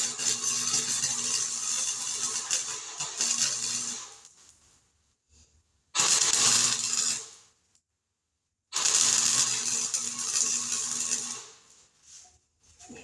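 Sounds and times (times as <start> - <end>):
low welder hum: 0.1 - 4.6, 6.0 - 7.4, 8.8 - 11.8
welder arc crackling: 0.4 - 4.6, 8.8 - 11.6.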